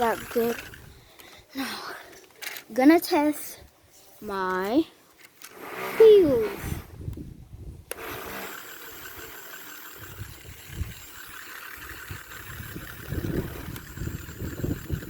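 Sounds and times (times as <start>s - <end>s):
toy car electric motor whirring: 0.0s - 1.3s, 5.3s - 6.9s, 7.9s - 15.0s.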